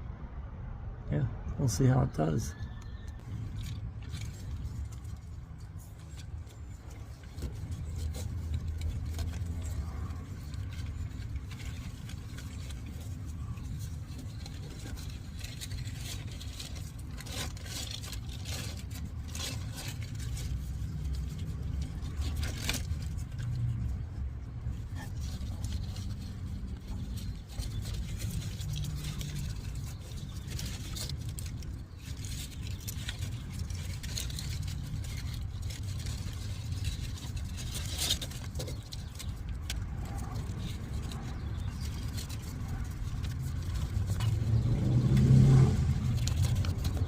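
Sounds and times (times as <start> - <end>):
steady low rumble: 0.0 - 47.0
tape rustling and clicking: 2.8 - 47.0.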